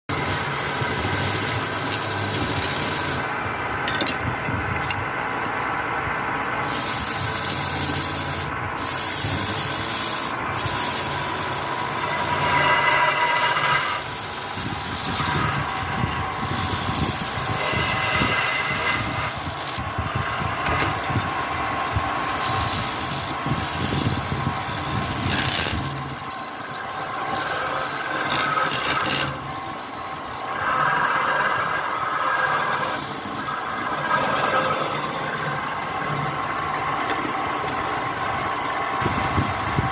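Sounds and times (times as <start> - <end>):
woodworking tool rasping wood: 0.1 - 3.3, 6.6 - 21.1, 22.4 - 36.2
machine hum: 0.1 - 39.9.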